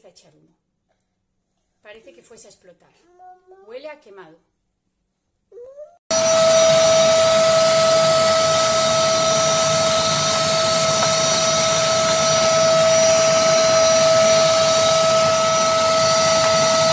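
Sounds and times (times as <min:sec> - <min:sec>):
air rushing hiss: 0:06.1 - 0:16.9
vacuum cleaner motor whine: 0:06.1 - 0:16.9.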